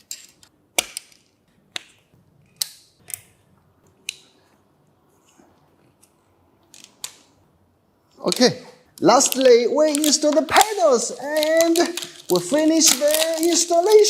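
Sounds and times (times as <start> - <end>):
small parts clicking into place: 0.0 - 3.4, 6.0 - 7.4, 8.2 - 14.0.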